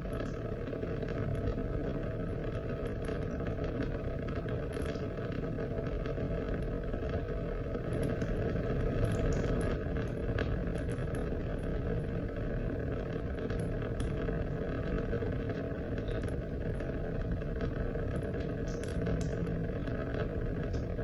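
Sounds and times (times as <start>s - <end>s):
raindrops ticking: 7.8s - 21.0s.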